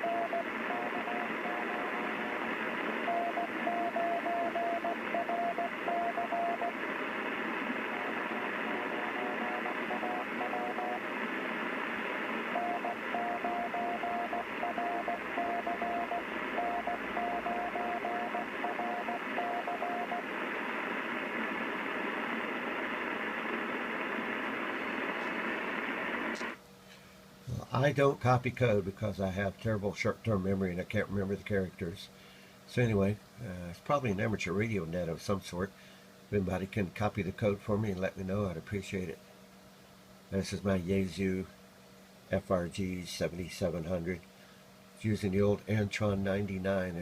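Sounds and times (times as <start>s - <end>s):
morse code beeps: 0.0s - 2.1s, 3.0s - 6.8s, 8.0s - 11.0s, 12.5s - 20.2s
radio static hiss: 0.0s - 26.6s, 45.0s - 47.0s.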